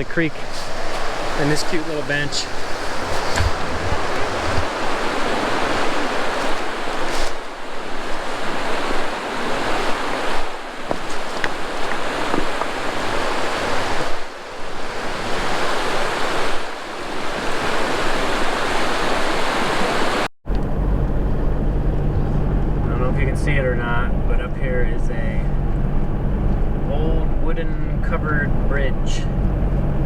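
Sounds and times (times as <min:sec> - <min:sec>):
creek water rushing: 0:00.0 - 0:20.3.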